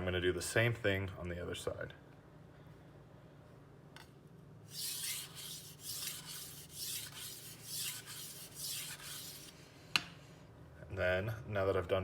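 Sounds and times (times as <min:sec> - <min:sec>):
knife scraping on whetstone: 0:04.7 - 0:09.5.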